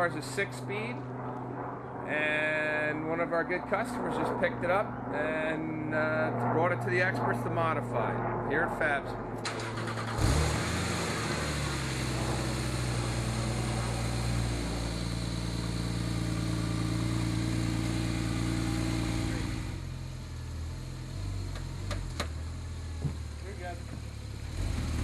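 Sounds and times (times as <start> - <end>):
car engine idling: 9.6 - 25.0.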